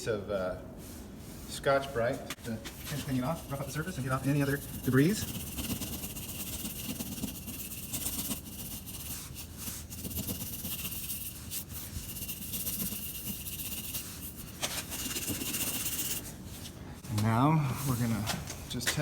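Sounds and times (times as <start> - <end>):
abrasive pad scrubbing surface: 2.6 - 16.8.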